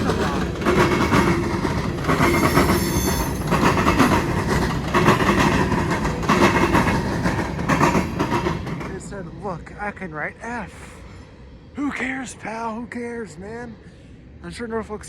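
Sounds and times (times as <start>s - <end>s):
train wheels clacking over rail joints: 0.0s - 9.4s.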